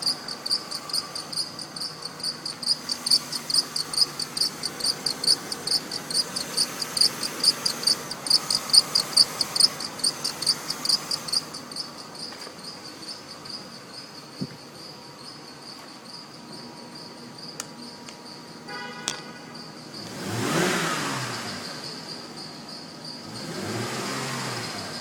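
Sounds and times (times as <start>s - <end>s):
belt pulley squeaking: 0.0s - 12.7s.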